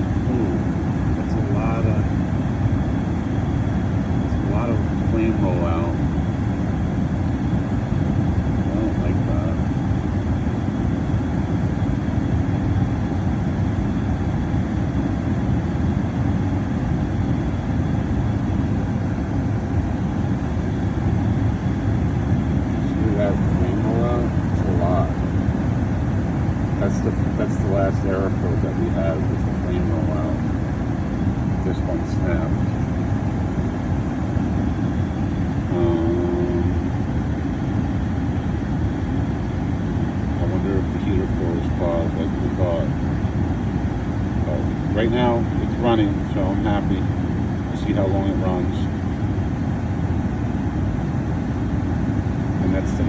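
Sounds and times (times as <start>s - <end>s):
gas furnace rumbling: 0.0s - 53.0s.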